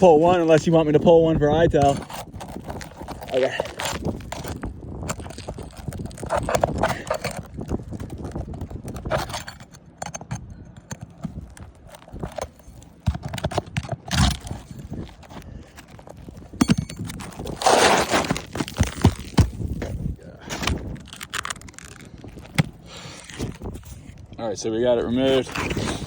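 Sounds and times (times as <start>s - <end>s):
roof shingle knocking and scraping: 0.0s - 24.2s.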